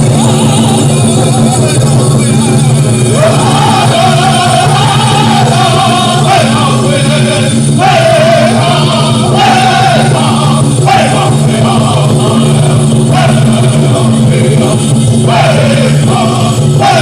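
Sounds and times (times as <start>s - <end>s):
men singing high held phrases: 0.0s - 17.0s
steady drum beat: 0.0s - 17.0s.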